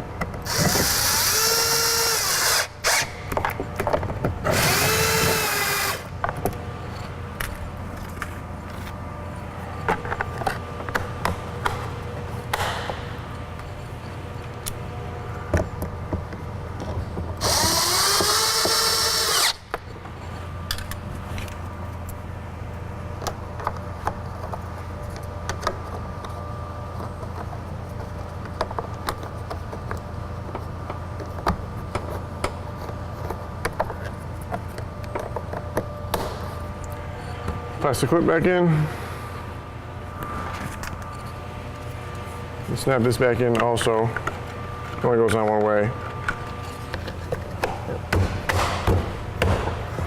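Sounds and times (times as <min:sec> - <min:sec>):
steady low hum: 0:00.0 - 0:50.0
power drill spinning up: 0:00.5 - 0:03.1, 0:04.5 - 0:06.1, 0:17.4 - 0:19.6.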